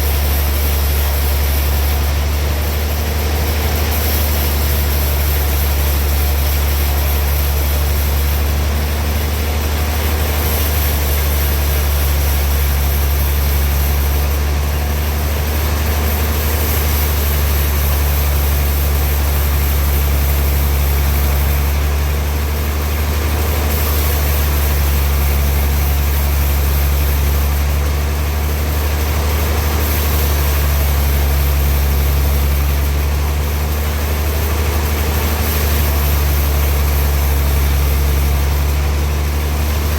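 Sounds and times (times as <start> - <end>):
sawmill machinery engine drone: 0.0 - 39.9.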